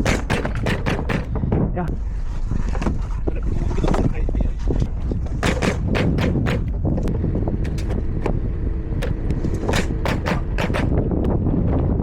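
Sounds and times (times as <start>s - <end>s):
hammer nailing into wood: 0.0s - 1.4s, 5.4s - 6.8s, 9.0s - 11.1s
wind on microphone: 0.0s - 12.0s.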